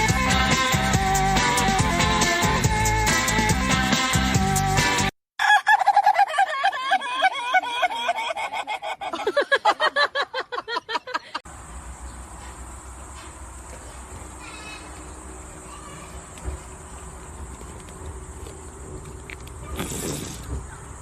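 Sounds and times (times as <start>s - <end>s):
music: 0.0s - 5.1s.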